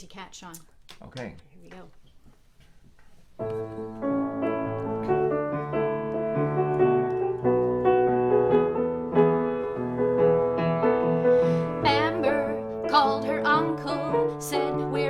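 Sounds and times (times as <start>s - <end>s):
piano chords over bass line: 3.4s - 15.0s.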